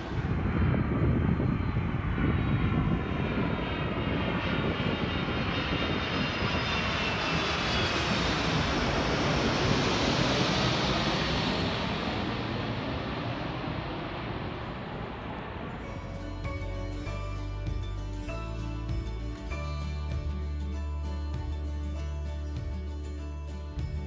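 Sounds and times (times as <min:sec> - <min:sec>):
jet airliner engine rush: 0:00.0 - 0:17.2
wind rumbling on microphone: 0:00.0 - 0:18.4.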